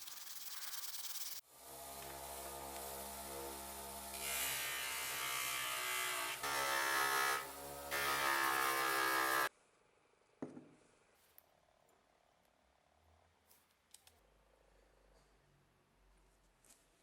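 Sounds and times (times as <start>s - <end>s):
grinding hiss: 0.0s - 9.5s
power tool motor humming: 1.0s - 9.5s.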